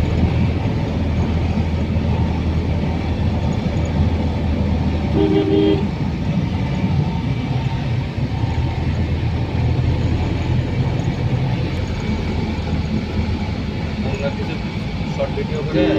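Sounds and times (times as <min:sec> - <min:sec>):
vehicle motor rumbling: 0:00.0 - 0:15.9
horn toot: 0:05.2 - 0:05.9.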